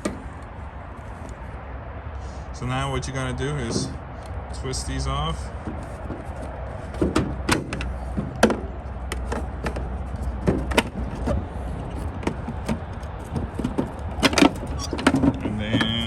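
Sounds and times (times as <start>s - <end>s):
plastic clicks and knocks: 5.6s - 16.0s.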